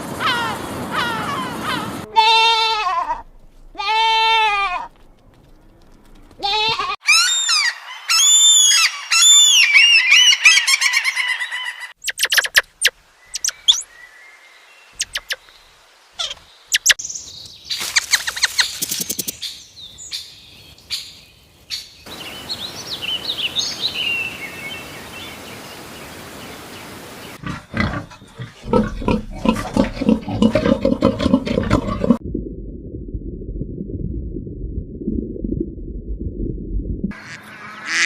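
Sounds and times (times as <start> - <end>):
high chirping calls: 7.1 - 14.2, 14.9 - 25.6.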